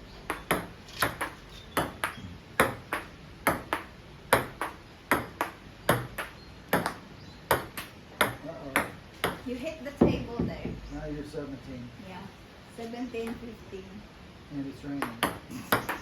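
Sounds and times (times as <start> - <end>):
paddles hitting ping pong ball: 0.3 - 10.8, 15.0 - 16.0
ping pong ball bouncing on table: 0.3 - 10.8, 15.0 - 16.0.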